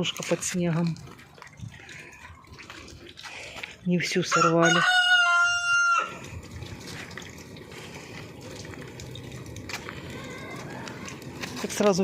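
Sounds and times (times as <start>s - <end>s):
running trickling water: 0.0s - 12.0s
rooster crowing: 4.3s - 6.2s.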